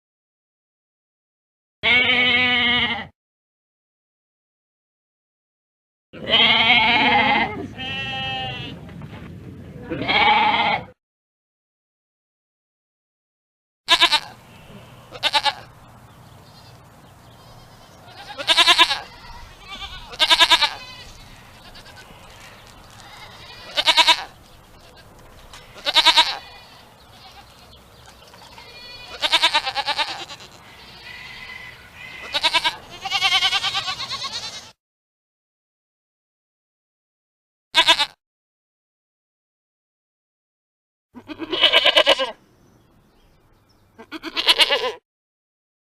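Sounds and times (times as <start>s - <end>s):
goat bleating: 1.8s - 3.1s, 6.2s - 8.8s, 9.9s - 11.0s, 13.9s - 15.8s, 16.6s - 34.8s, 37.8s - 38.2s, 41.2s - 42.4s, 44.0s - 45.0s.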